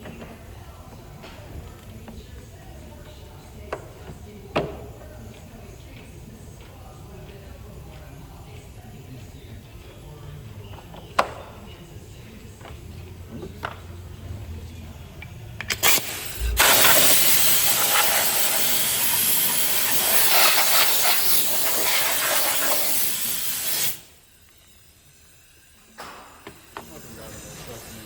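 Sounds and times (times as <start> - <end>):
short gas spurts: 15.7 - 24.1
pressurized gas hissing: 15.7 - 28.0.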